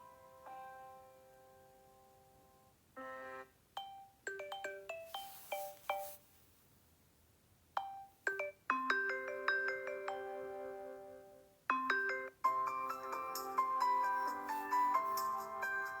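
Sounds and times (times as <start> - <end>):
phone ringtone chords: 3.0 - 6.2, 7.8 - 16.0.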